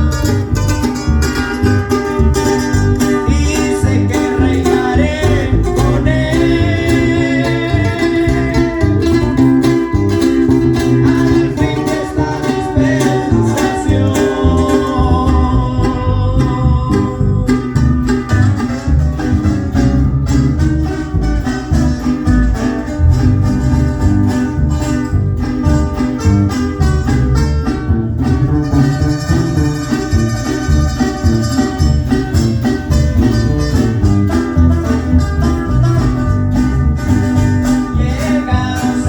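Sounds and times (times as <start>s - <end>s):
bass line: 0.0s - 39.0s
live band playing: 0.0s - 39.0s
plucked guitars: 0.0s - 39.0s
steady beat: 0.1s - 39.0s
person singing: 3.0s - 9.8s, 10.6s - 18.4s, 37.8s - 39.0s.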